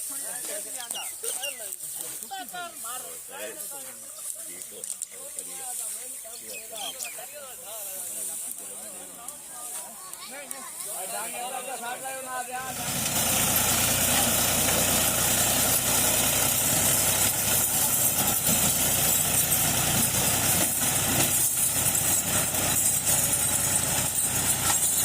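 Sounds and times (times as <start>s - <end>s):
engine running loudly: 12.6s - 25.0s.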